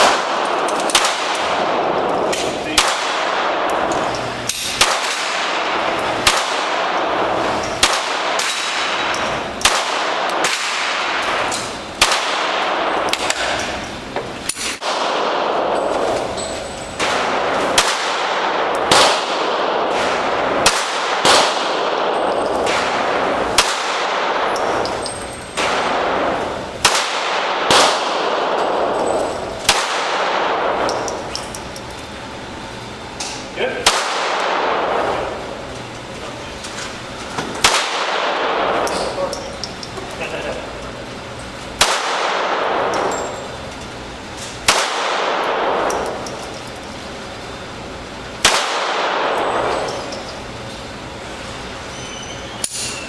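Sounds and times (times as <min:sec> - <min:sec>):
pistol shots: 0:00.0 - 0:13.7, 0:14.5 - 0:16.1, 0:17.0 - 0:31.4, 0:33.7 - 0:35.4, 0:37.5 - 0:39.7, 0:41.8 - 0:43.2, 0:44.6 - 0:46.4, 0:48.4 - 0:50.1.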